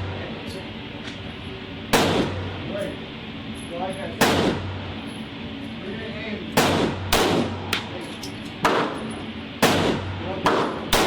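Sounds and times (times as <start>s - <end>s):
pistol shots: 1.9s - 2.5s, 4.2s - 4.7s, 6.6s - 7.9s, 8.6s - 9.0s, 9.6s - 11.0s.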